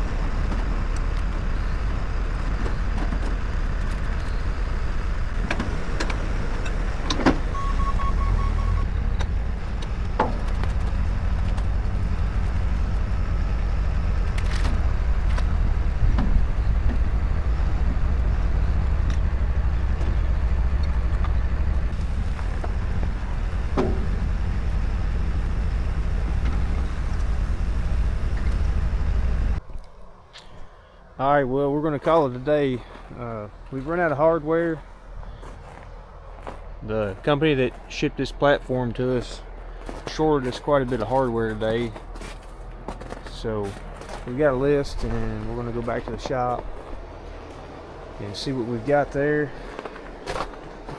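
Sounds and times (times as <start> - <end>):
heavy machinery engine running: 0.0 - 29.6, 31.5 - 50.9
quick beeps: 7.5 - 8.9.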